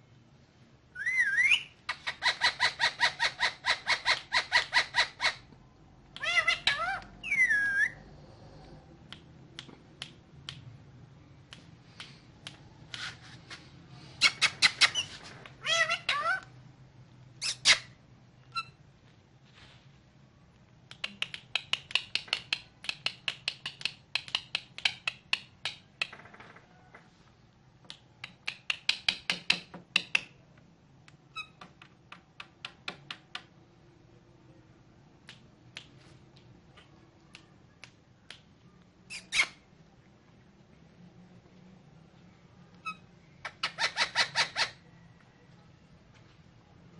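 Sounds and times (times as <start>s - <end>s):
parakeet squawking: 6.2s - 8.0s, 14.2s - 16.5s.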